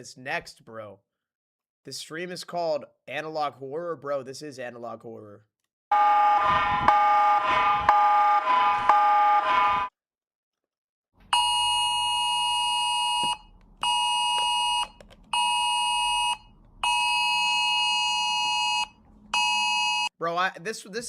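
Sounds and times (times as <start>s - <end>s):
two-pitch emergency alert buzz: 5.9s - 9.9s, 11.3s - 20.1s.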